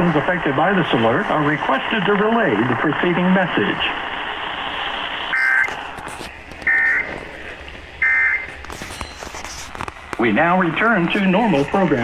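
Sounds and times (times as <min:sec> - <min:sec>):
faint radio hiss: 0:00.0 - 0:07.6.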